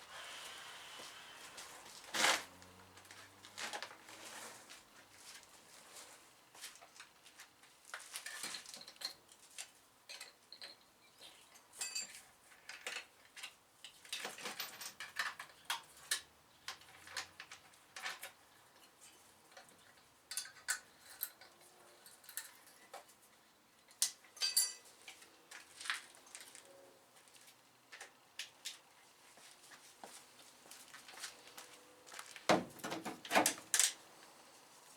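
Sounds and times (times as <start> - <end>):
metal tools clinking: 11.7 - 13.0, 24.3 - 25.0.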